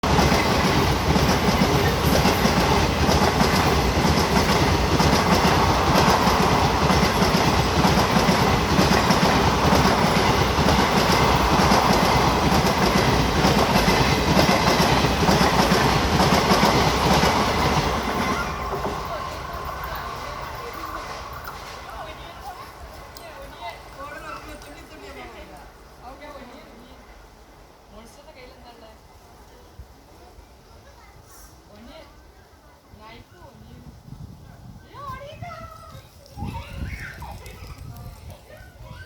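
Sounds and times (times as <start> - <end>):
train wheels clickety-clack: 0.0 - 25.7.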